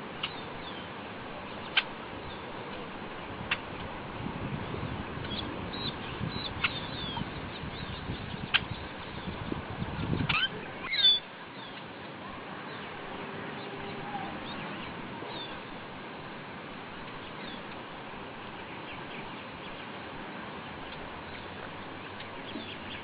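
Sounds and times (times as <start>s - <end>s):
steady background hiss: 0.0s - 23.0s
loud bird call: 10.1s - 11.8s
faint bird chirps: 10.1s - 13.0s.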